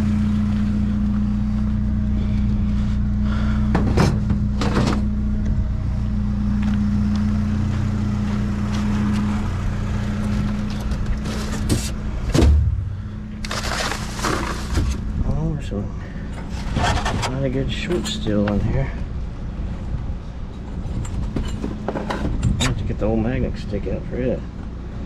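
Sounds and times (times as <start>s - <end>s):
truck engine idling: 0.0s - 25.0s
heavy thump: 11.7s - 13.0s.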